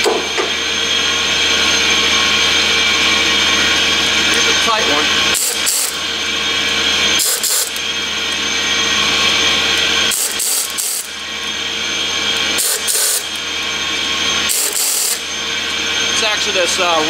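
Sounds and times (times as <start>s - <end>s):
air compressor drone: 0.0s - 17.0s
hand ratchet cranking: 5.4s - 6.0s, 7.2s - 7.8s, 10.1s - 11.1s, 12.6s - 13.4s, 14.5s - 15.2s.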